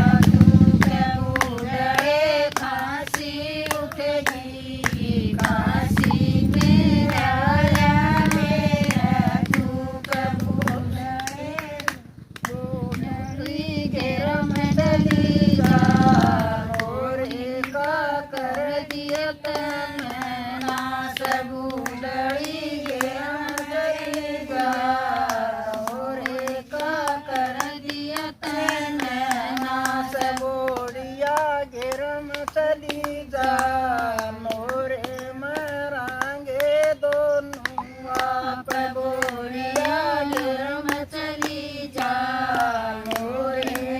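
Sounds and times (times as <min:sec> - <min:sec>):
hand clapping: 0:00.0 - 0:43.9
person singing folk song: 0:00.0 - 0:43.9.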